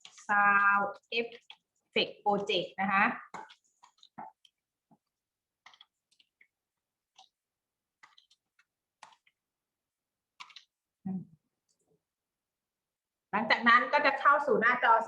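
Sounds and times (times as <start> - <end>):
keyboard and mouse clicking: 5.6 - 6.5, 8.0 - 9.4, 10.4 - 10.8.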